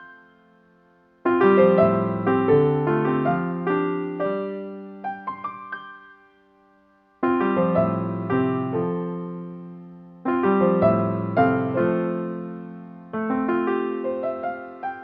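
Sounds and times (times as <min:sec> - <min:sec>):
easy-listening piano chords: 0:00.0 - 0:15.0.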